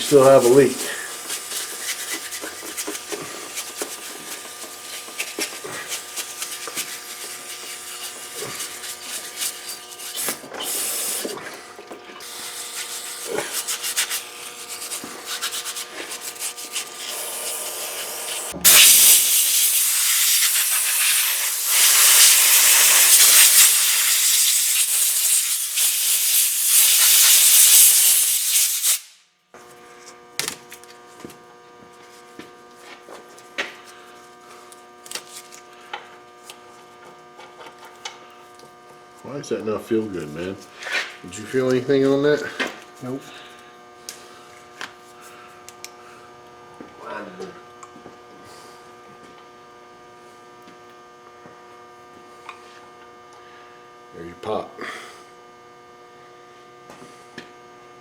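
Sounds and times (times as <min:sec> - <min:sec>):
rubbing and wiping: 0:01.2 - 0:11.2, 0:12.6 - 0:17.2
spray hissing: 0:16.7 - 0:29.1.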